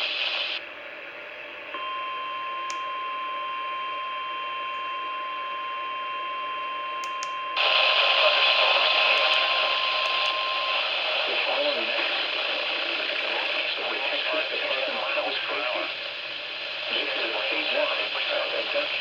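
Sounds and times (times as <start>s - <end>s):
loud static hiss: 0.0s - 1.7s, 7.0s - 19.0s
radio hiss: 0.0s - 2.0s, 7.0s - 19.0s.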